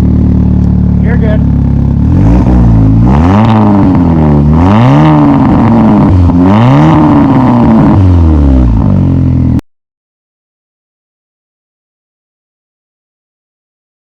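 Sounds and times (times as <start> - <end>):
car engine revving: 0.0 - 9.6.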